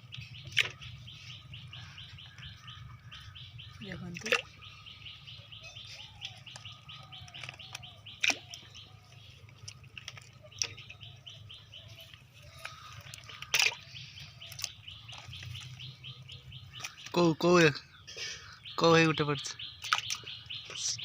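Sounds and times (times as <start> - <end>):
bird chirping rapidly: 0.0 - 21.0
sharp knocks or splashes: 4.0 - 4.6, 7.3 - 8.6, 13.0 - 13.9.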